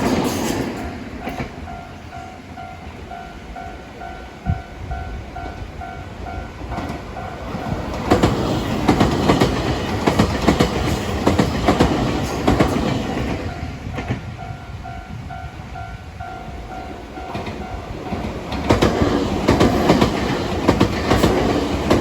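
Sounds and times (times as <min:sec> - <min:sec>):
train wheels clacking over rail joints: 0:00.0 - 0:01.8, 0:06.7 - 0:14.4, 0:17.2 - 0:22.0
level crossing warning bell: 0:01.2 - 0:07.4.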